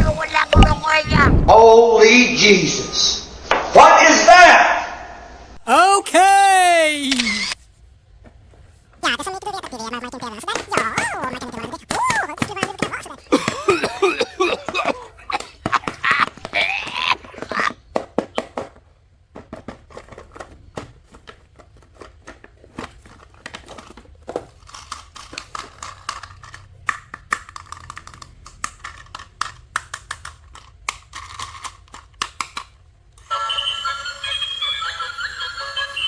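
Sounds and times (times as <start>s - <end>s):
toy packaging crinkling: 9.0s - 18.6s, 19.4s - 36.0s
packaging snapping: 9.6s - 33.2s
music: 33.3s - 36.0s.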